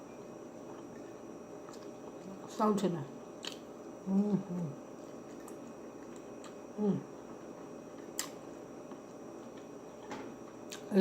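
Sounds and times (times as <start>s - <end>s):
person chewing: 0.5s - 2.4s, 3.4s - 10.9s
person humming mm: 4.1s - 4.8s, 6.8s - 7.1s.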